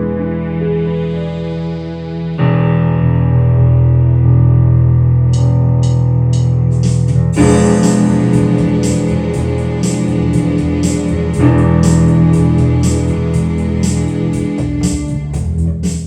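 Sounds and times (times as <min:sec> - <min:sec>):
keyboard chords: 0:00.0 - 0:16.0
ticking beat: 0:05.4 - 0:16.0
guitar: 0:07.4 - 0:15.9.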